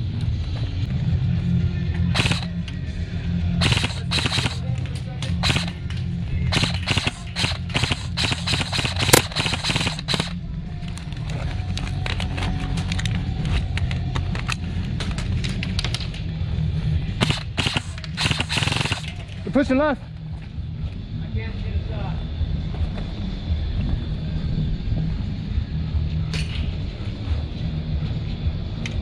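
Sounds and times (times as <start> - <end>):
background music: 0.0 - 29.0
airsoft guns firing bursts: 2.1 - 2.5, 3.6 - 4.8, 5.4 - 5.8, 6.5 - 10.4, 17.2 - 19.3.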